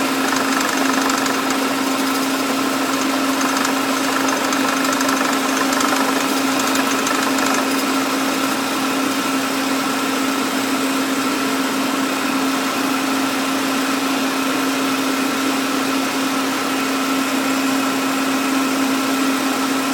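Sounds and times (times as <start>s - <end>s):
faint fast ticking: 0.0s - 8.0s
car engine idling with clatter: 0.0s - 9.3s.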